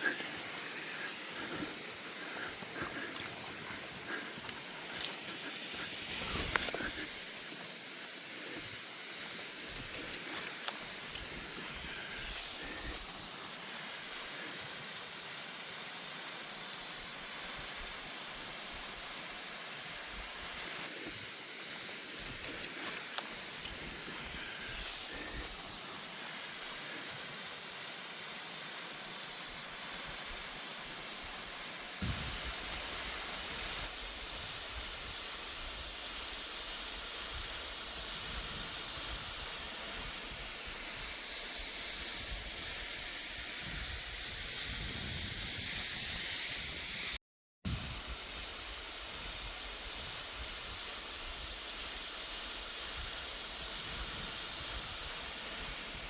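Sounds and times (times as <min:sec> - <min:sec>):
waterfall rushing: 0:00.0 - 0:35.6.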